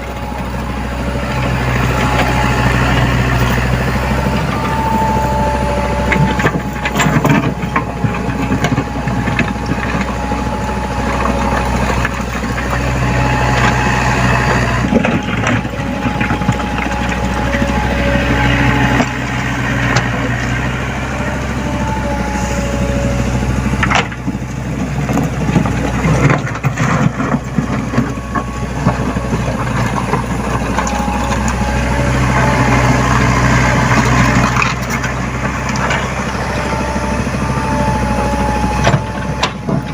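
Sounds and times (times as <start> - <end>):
excavator diesel engine running: 0.0 - 39.9
knocks and clanks of steel and rock: 6.1 - 10.2, 38.8 - 39.9.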